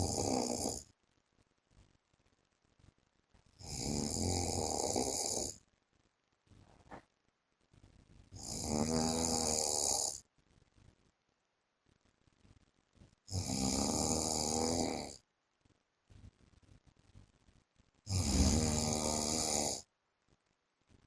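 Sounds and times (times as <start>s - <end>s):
man snoring: 0.0s - 0.9s, 3.6s - 5.6s, 8.4s - 10.2s, 13.3s - 15.2s, 18.1s - 19.9s.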